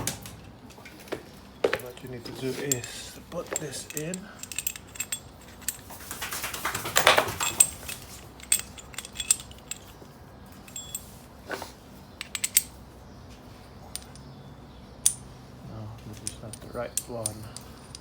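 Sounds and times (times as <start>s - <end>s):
small metal parts clinking and scraping: 1.7s - 11.2s, 12.2s - 12.8s, 13.8s - 14.4s, 15.0s - 15.3s, 16.0s - 18.0s.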